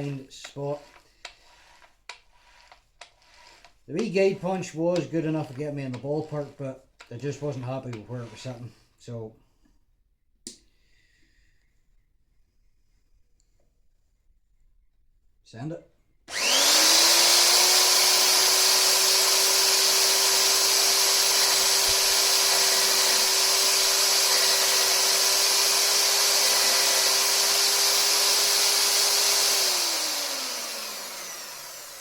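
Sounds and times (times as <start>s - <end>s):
drill motor whining: 0.8s - 3.7s, 16.3s - 32.0s.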